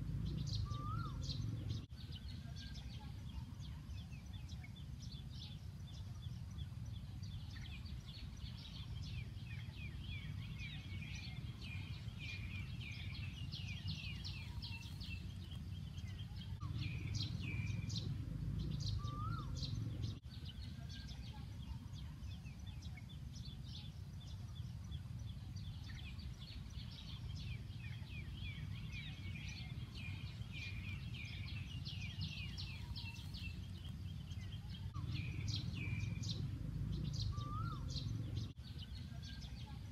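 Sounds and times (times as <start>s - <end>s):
low background rumble: 0.0s - 39.9s
small birds chirping: 0.0s - 39.9s.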